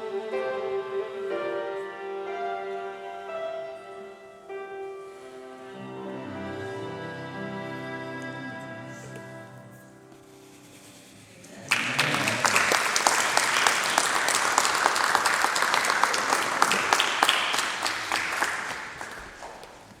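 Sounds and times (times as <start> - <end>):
held music chord: 0.0 - 10.9
audience applause: 11.4 - 20.0.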